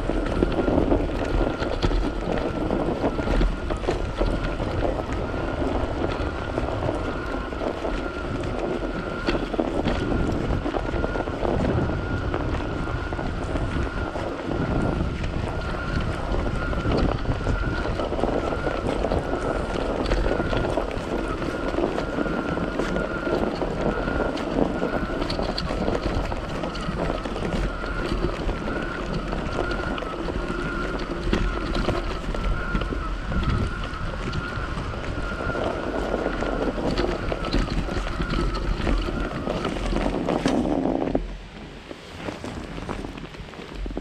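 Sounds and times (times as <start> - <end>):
thin steady whine: 0.0 - 44.0
wind buffeting microphone: 0.0 - 44.0.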